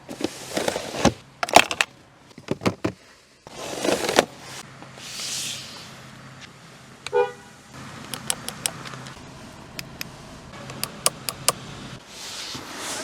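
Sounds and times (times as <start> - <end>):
sharp clicks: 8.1 - 9.2, 9.8 - 10.1, 10.7 - 11.6.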